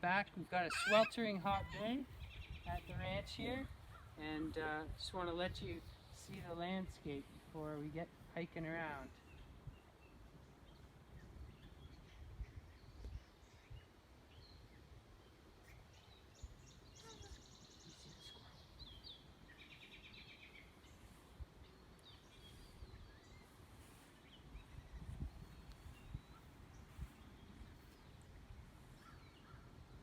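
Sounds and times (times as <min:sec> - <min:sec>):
bird calls: 0:00.6 - 0:02.4
rapid bird trills: 0:00.7 - 0:01.8.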